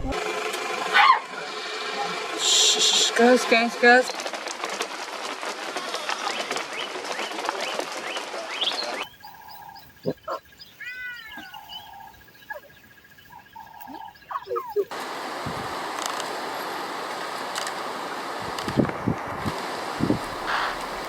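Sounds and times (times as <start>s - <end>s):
chorus of high chirps: 6.4s - 15.0s.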